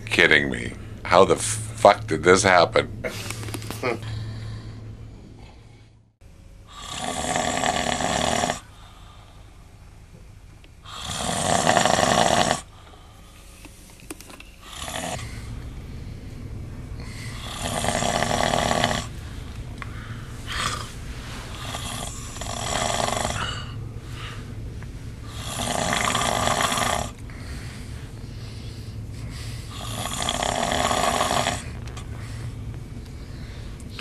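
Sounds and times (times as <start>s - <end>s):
steady low hum: 0.0s - 34.0s
man snoring: 6.7s - 9.1s, 10.8s - 12.8s, 14.6s - 15.5s, 17.0s - 19.2s, 20.2s - 24.5s, 25.2s - 31.8s.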